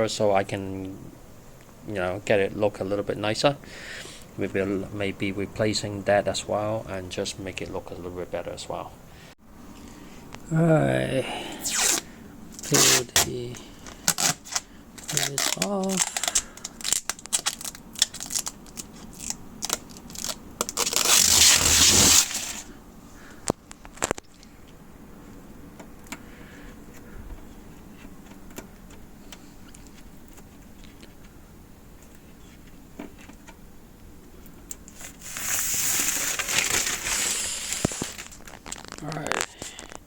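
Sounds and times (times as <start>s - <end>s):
plastic crinkling: 11.7s - 22.7s, 34.8s - 40.0s.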